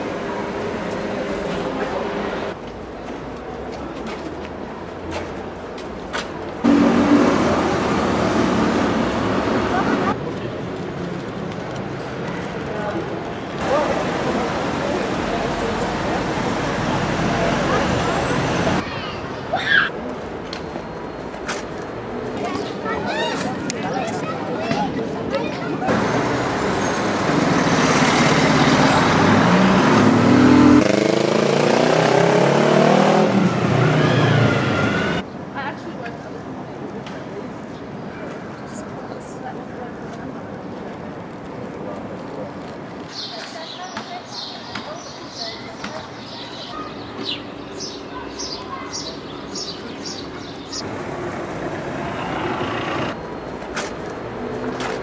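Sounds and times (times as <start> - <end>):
rushing noise: 6.6 - 10.2, 13.6 - 18.8, 50.8 - 53.2
vehicle engine accelerating: 6.6 - 10.2, 13.6 - 18.8, 25.9 - 35.2, 50.8 - 53.2.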